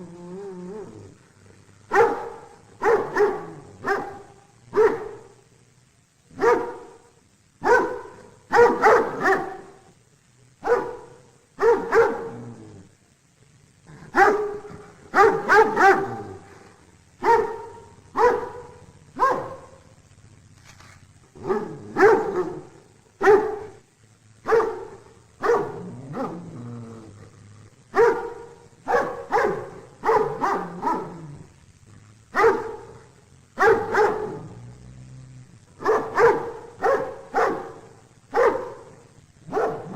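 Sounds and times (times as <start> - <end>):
dog growling: 0.0 - 1.3, 12.2 - 13.0, 25.6 - 27.8, 30.2 - 31.6, 33.8 - 36.6
dog barking: 1.9 - 5.4, 6.3 - 9.9, 10.6 - 12.4, 14.1 - 16.5, 17.2 - 19.9, 21.4 - 23.8, 24.4 - 26.5, 27.9 - 31.5, 32.3 - 34.6, 35.8 - 39.9.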